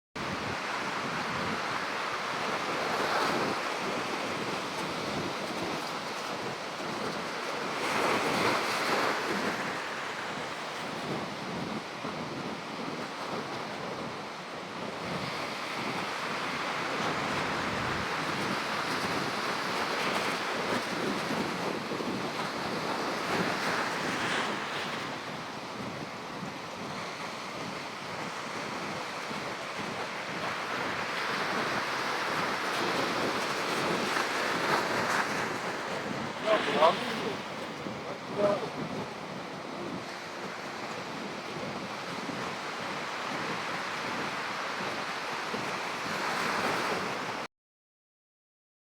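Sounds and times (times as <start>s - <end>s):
wind buffeting microphone: 0.2s - 47.4s
water splashing against boat: 15.0s - 47.4s.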